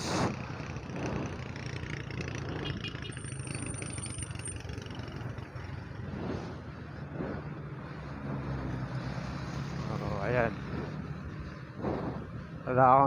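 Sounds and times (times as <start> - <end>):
wind rushing over microphone: 0.0 - 2.8, 5.0 - 13.0
low rumble: 4.7 - 12.8.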